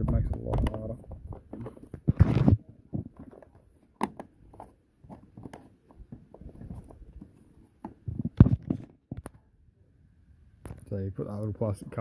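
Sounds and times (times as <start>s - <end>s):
hands handling roof rack parts: 0.0s - 9.3s.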